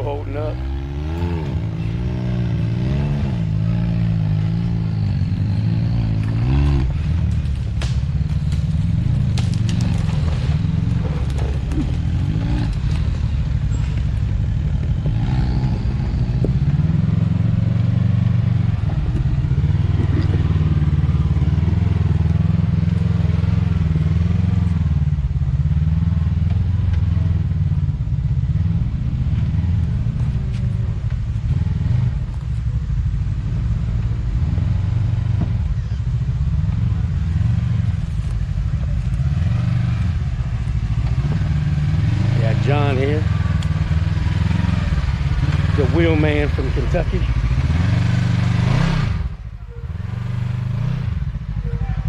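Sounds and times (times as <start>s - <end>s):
utility vehicle engine running: 0.0s - 52.0s
knocks and clatter over rocks: 6.2s - 14.2s.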